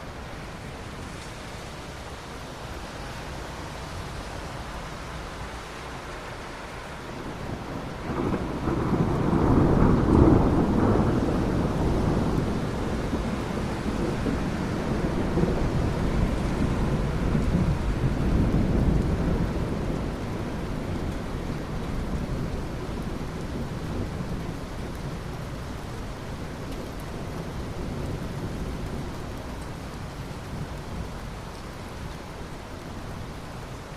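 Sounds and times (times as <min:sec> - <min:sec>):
steady rain: 0:00.0 - 0:33.9
thunder rumbling: 0:07.3 - 0:25.3.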